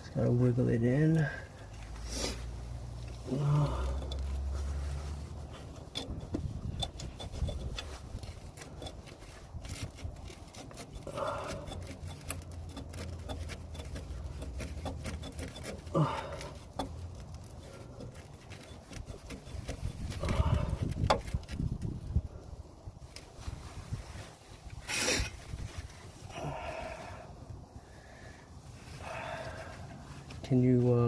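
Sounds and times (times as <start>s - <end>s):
bolt scraping against metal: 3.0s - 21.7s
person grunting: 3.2s - 4.0s, 15.9s - 16.4s.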